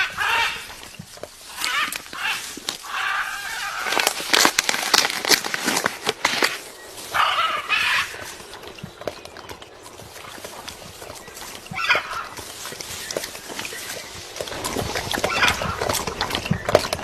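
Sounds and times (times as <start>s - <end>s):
parrot raspy calls: 0.0s - 0.8s, 1.5s - 4.0s, 7.1s - 8.4s, 11.6s - 12.4s, 15.2s - 15.9s.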